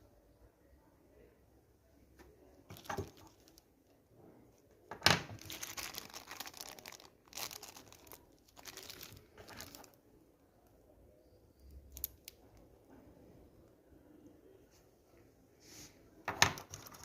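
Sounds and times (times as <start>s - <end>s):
packaging crinkling and tearing: 2.7s - 3.6s, 5.3s - 10.0s, 16.6s - 17.0s.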